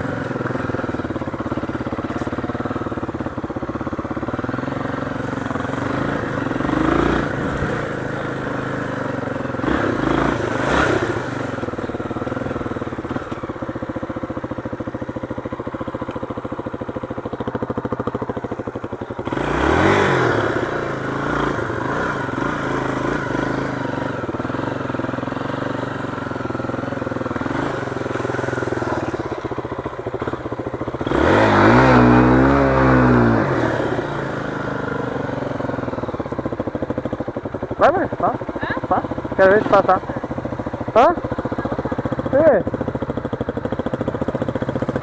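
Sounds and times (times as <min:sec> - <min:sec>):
motorcycle engine revving: 0:00.0 - 0:45.0.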